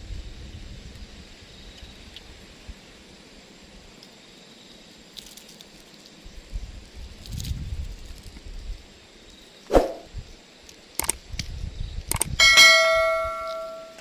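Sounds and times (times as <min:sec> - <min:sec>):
ringing metallic clang: 0:12.4 - 0:14.0.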